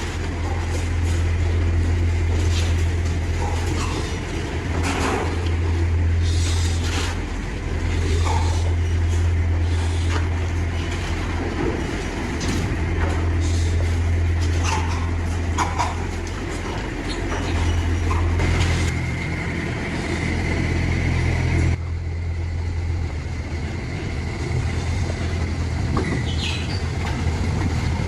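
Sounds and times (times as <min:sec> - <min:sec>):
clatter and banging: 0:00.0 - 0:06.0, 0:10.1 - 0:19.0
low machine hum: 0:00.0 - 0:28.0.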